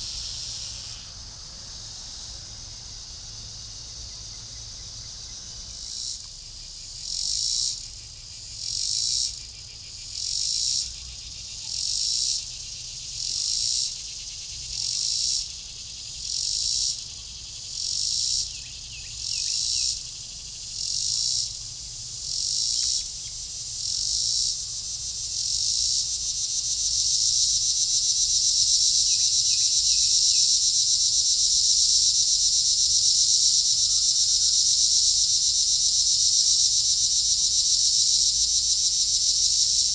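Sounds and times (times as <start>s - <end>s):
insects buzzing: 0.0s - 6.8s, 15.6s - 39.9s.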